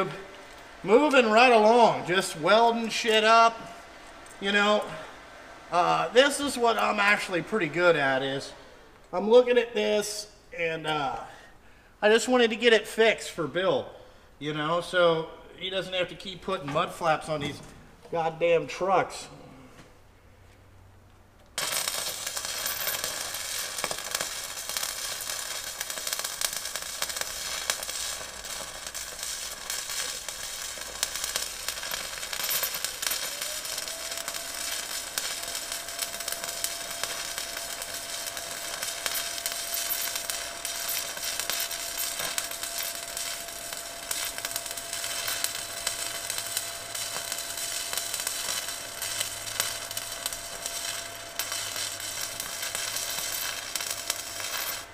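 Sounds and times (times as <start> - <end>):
electric arc welding crackle: 0.0 - 11.3, 21.5 - 54.9
faint high whine: 21.6 - 54.9.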